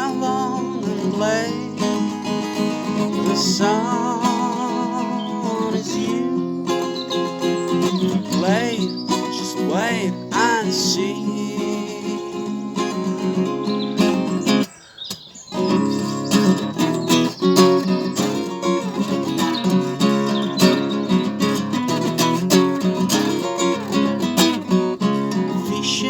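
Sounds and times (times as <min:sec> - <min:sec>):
acoustic guitar strumming: 0:00.0 - 0:26.0
faint birdsong: 0:00.0 - 0:26.0.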